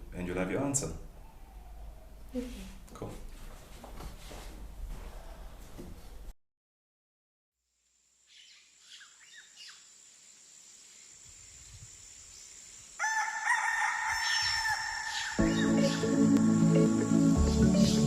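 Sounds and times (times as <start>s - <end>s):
faint bird chirps: 1.2s - 2.6s, 8.2s - 9.9s
rooster crowing: 13.0s - 16.1s
music with bass line: 15.4s - 18.0s.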